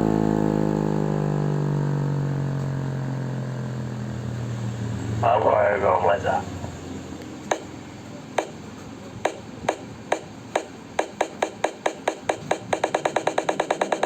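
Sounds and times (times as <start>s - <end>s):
electronic music percussive ticks: 7.5s - 7.7s, 8.4s - 8.6s, 9.2s - 14.0s.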